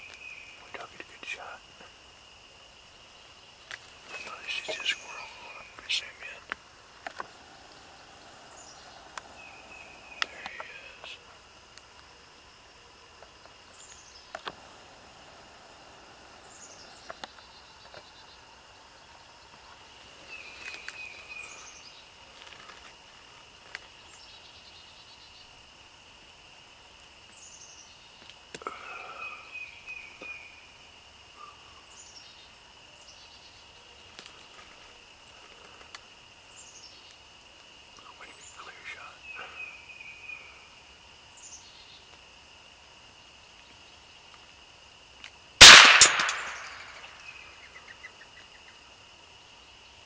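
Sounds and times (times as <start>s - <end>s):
high insect drone: 0.0s - 50.0s
birds calling: 3.0s - 11.5s, 13.1s - 22.1s, 38.0s - 40.8s, 45.6s - 48.8s
faint clicks: 5.6s - 12.1s, 13.2s - 14.7s.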